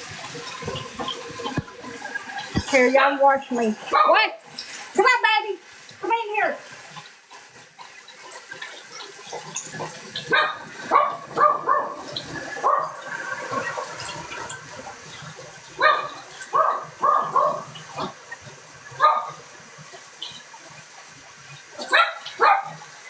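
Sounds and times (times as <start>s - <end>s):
running water: 0.0s - 23.0s
dog barking and yelping: 3.8s - 4.4s, 10.3s - 13.8s, 15.8s - 18.2s, 18.9s - 19.5s, 21.8s - 22.8s.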